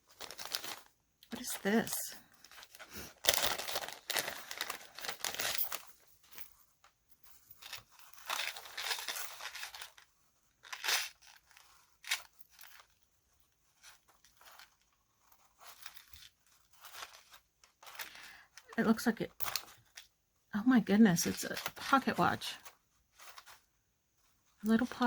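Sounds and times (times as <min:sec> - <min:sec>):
wrapping crinkling and tearing: 0:00.0 - 0:06.0, 0:07.6 - 0:13.0, 0:13.7 - 0:20.0.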